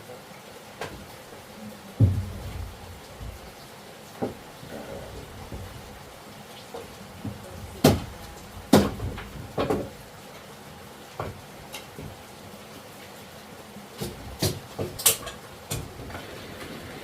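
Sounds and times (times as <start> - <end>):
sharp knocks: 2.0 - 3.4, 8.7 - 9.9.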